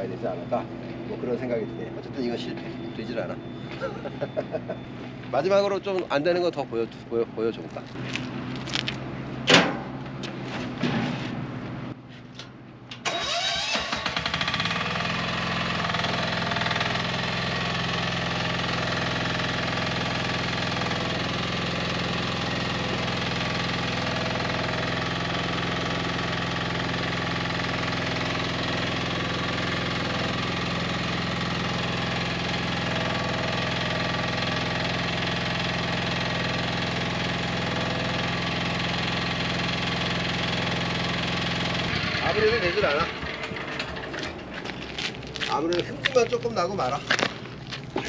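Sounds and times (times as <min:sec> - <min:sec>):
diesel engine idling: 0:13.1 - 0:48.0.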